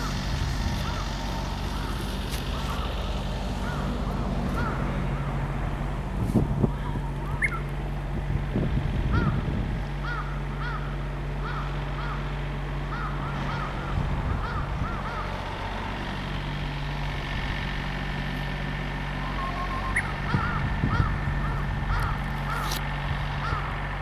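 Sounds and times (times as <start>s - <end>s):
bird calling short arching notes: 6.8s - 7.7s, 19.0s - 22.8s.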